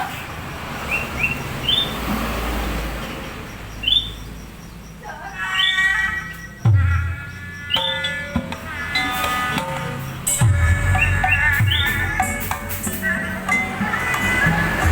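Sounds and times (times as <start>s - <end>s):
small bird chirping: 0.8s - 2.0s, 3.4s - 12.4s
music with held notes: 7.8s - 14.9s.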